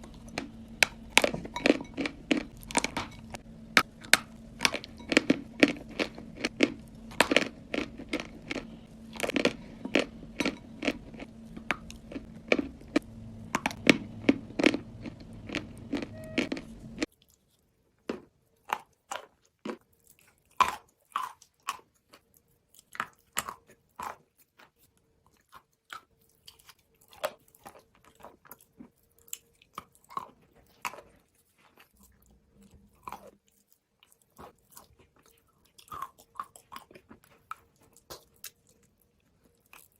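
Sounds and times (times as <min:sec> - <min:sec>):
low steady hum: 0:00.0 - 0:17.1
person chewing crunchy food: 0:00.0 - 0:39.9.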